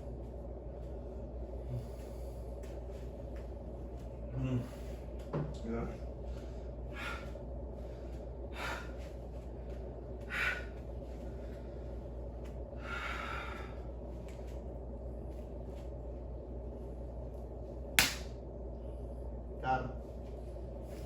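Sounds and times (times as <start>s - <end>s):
person breathing hard: 6.2s - 14.1s.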